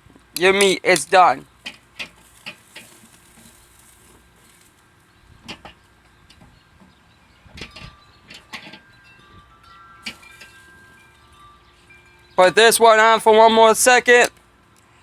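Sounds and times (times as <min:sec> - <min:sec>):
light metallic clinks: 0:05.5 - 0:12.8
ringing chime notes: 0:07.3 - 0:14.0.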